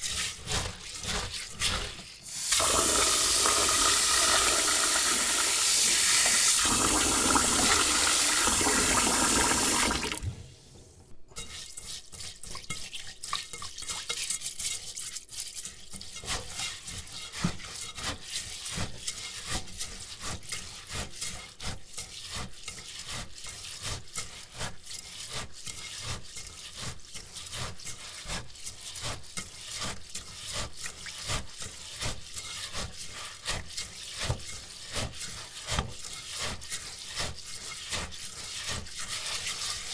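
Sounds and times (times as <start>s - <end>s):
hands scrubbing wet rice: 0.0s - 10.7s, 11.4s - 39.9s
tap water running into bowl: 2.2s - 10.4s.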